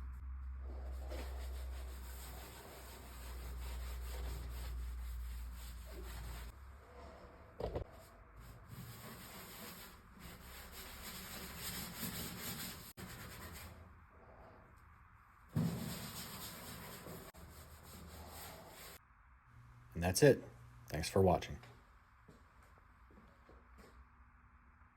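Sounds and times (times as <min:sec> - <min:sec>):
hand sanding wood surface: 0:00.9 - 0:06.6, 0:08.6 - 0:13.7.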